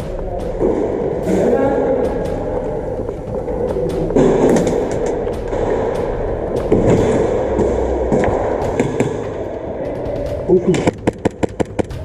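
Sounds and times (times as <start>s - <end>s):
sharp clicks and knocks: 3.1s - 9.5s, 10.2s - 12.0s.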